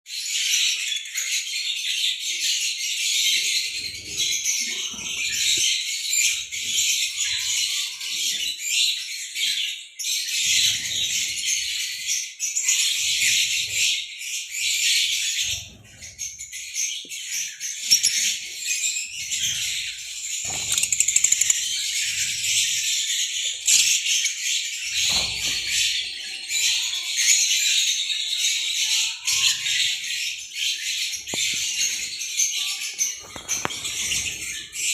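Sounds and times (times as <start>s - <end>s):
lovebirds chattering: 17.8s - 26.1s, 29.1s - 34.9s
wing flutters: 20.4s - 21.7s.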